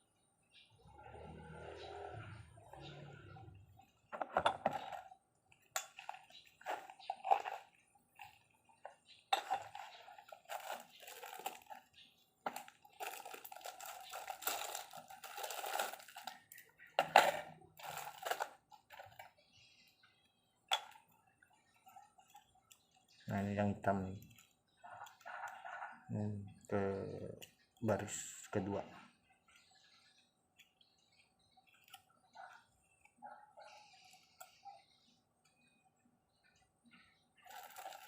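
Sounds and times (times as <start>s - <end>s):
small metallic clicks and scrapes: 24.1s - 26.1s, 29.4s - 34.8s.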